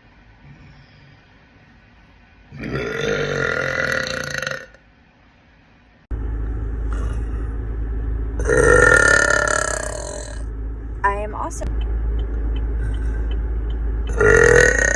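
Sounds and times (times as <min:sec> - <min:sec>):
steady low rumble: 0:06.0 - 0:14.9
woman burping: 0:14.1 - 0:14.9.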